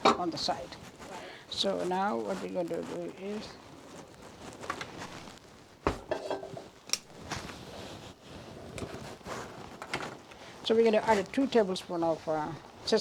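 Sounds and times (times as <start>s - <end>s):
pots and utensils clattering: 0.0s - 0.4s, 5.9s - 6.8s.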